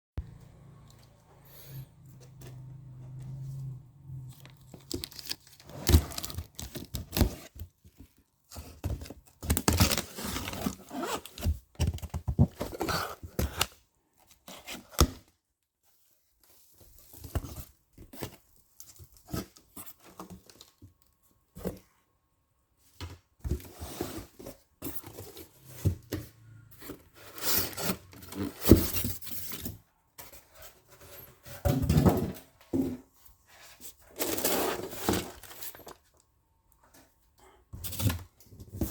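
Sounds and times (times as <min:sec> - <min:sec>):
plastic wrapping crinkling: 0:04.3 - 0:08.3
tape and cardboard tearing: 0:04.6 - 0:07.7.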